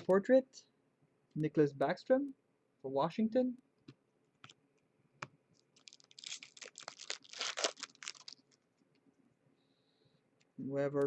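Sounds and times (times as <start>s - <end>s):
foil wrapper crinkling and tearing: 5.6s - 8.6s.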